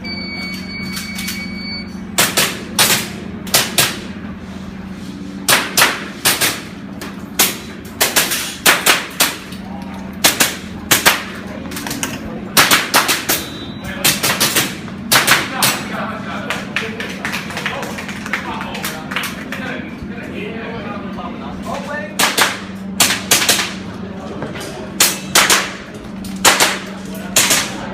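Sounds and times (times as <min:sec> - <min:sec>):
airsoft gun shots: 0:12.6 - 0:15.7, 0:22.2 - 0:23.8, 0:25.0 - 0:25.8, 0:26.4 - 0:27.8.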